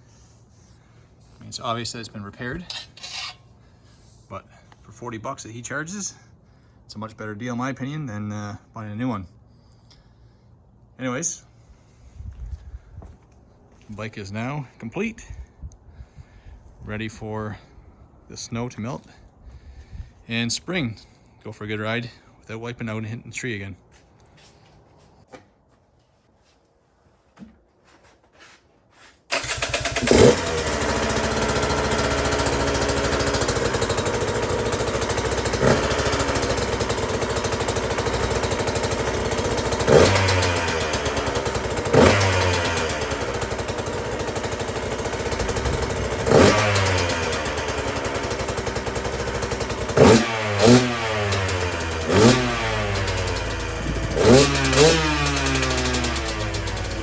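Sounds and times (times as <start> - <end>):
dirt bike engine starting: 29.3 - 57.0
dirt bike engine throttle blips: 29.3 - 57.0.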